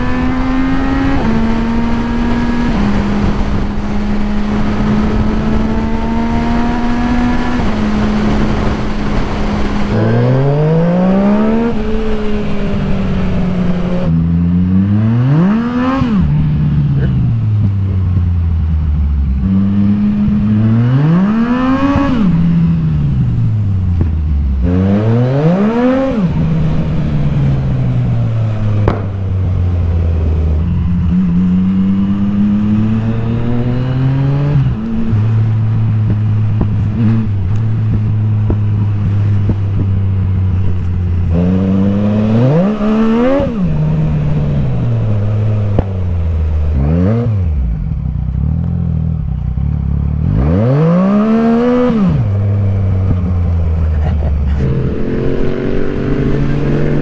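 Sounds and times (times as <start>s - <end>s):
motorcycle engine revving: 0.0s - 57.0s.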